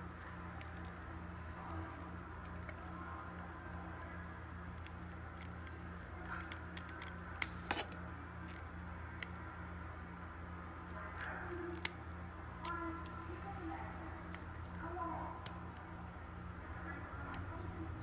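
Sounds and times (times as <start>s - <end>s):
low electrical hum: 0.0s - 18.0s.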